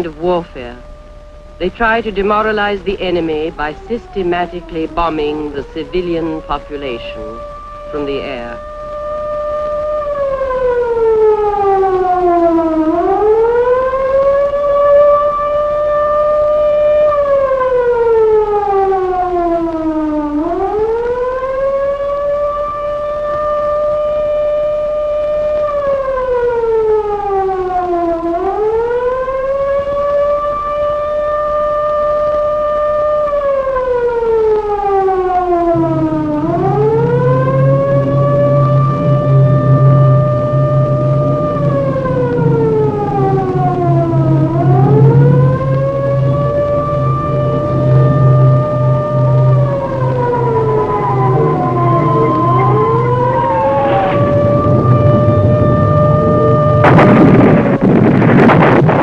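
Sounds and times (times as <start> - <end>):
air-raid siren wailing: 0.0 - 59.0
low droning sound: 35.5 - 59.0.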